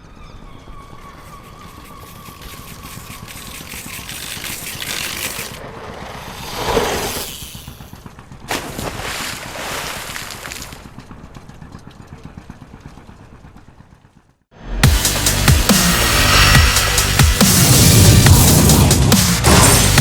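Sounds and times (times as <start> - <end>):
splash into water: 8.5 - 10.9
rushing noise: 14.6 - 20.0.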